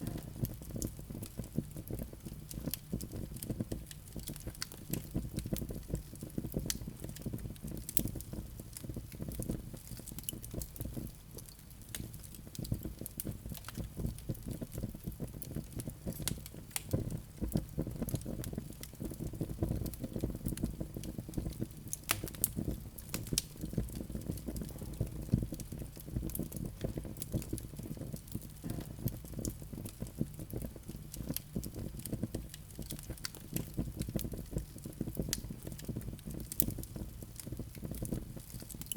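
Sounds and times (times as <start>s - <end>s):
wood fire crackling: 0.0s - 38.9s.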